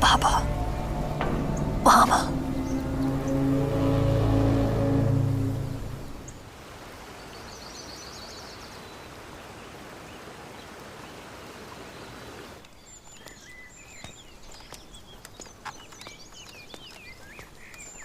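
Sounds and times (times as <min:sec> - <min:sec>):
steady rushing noise: 0:00.0 - 0:06.6.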